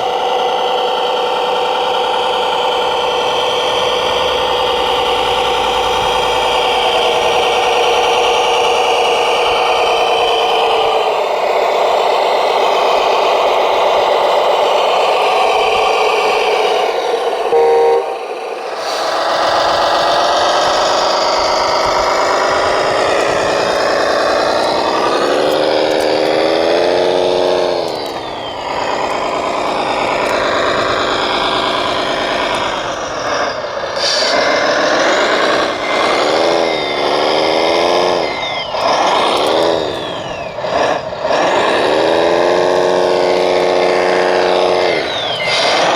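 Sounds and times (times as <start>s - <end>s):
rc truck engine revving: 0.0s - 45.9s
short beeps: 17.5s - 18.5s.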